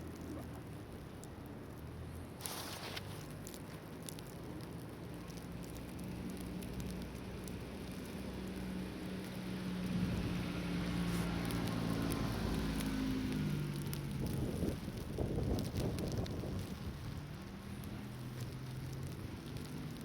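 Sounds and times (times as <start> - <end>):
blizzard wind-blown snow hiss: 1.9 - 20.0
vehicle engine humming: 4.2 - 20.0.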